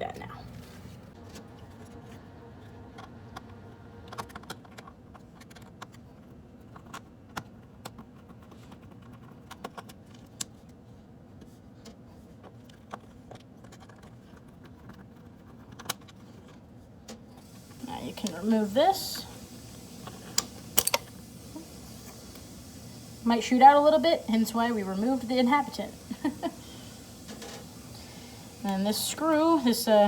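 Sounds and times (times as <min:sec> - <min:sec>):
faint steady hum: 0:17.3 - 0:30.0
small parts being handled: 0:19.6 - 0:22.6
screwdriver clicks and taps: 0:20.4 - 0:21.1.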